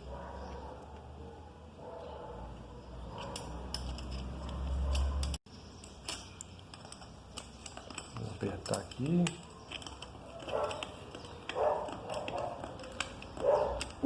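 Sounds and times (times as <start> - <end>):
wrench clinking on bolts: 3.1 - 14.0.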